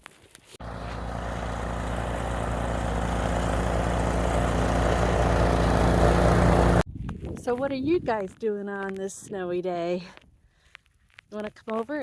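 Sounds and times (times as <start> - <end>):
engine running: 0.6 - 6.8.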